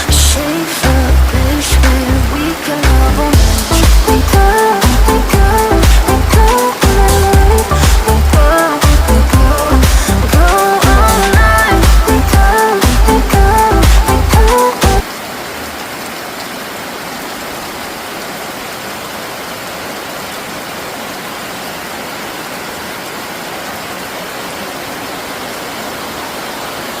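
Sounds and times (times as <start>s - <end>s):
steady rain falling: 0.0s - 27.0s
electronic dance music: 2.8s - 15.0s.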